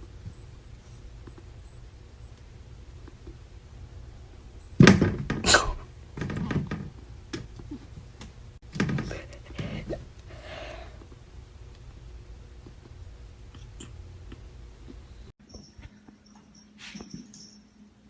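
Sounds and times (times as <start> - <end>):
thumps and knocks: 4.8 - 5.4, 6.2 - 10.0.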